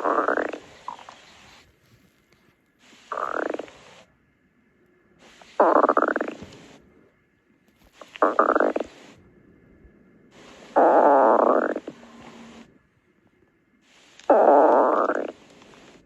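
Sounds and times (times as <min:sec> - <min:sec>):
stomach growling: 0:00.0 - 0:01.4, 0:03.1 - 0:03.8, 0:05.6 - 0:06.8, 0:07.9 - 0:09.2, 0:10.5 - 0:12.7, 0:14.2 - 0:16.0.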